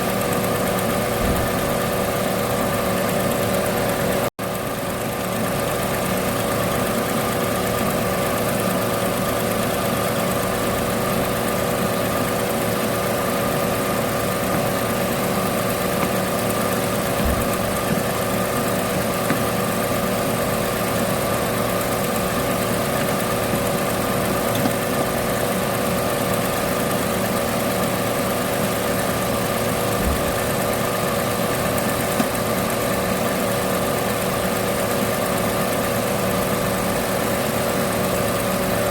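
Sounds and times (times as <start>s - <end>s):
car engine idling: 0.0s - 38.9s.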